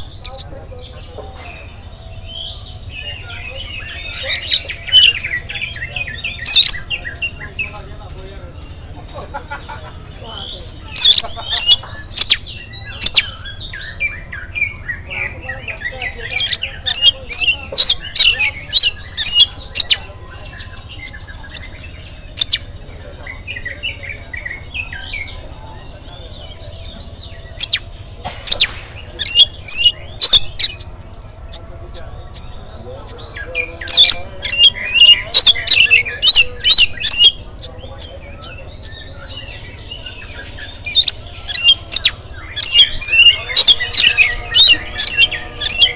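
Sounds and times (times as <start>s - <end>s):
magpie-robin singing: 0.0s - 45.9s.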